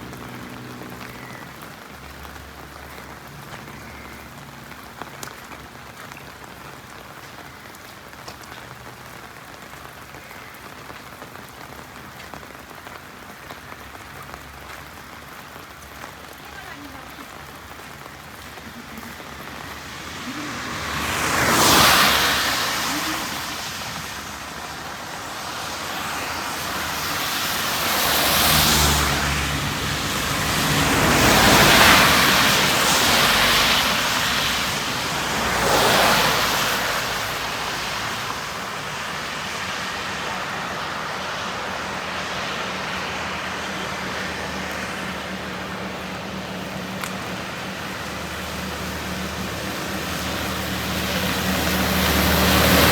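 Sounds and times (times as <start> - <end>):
heavy rain hiss: 0.0 - 52.9
truck engine hum: 16.9 - 34.0, 41.5 - 52.9.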